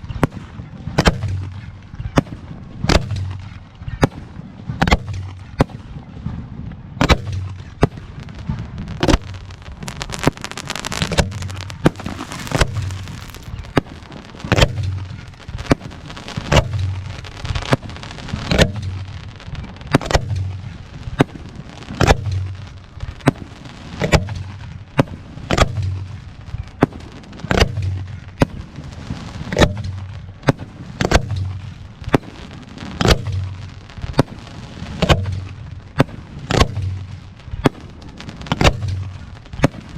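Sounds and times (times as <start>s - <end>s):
fireworks crackling: 0.0s - 39.9s
firework shell bursts booming: 7.0s - 28.8s.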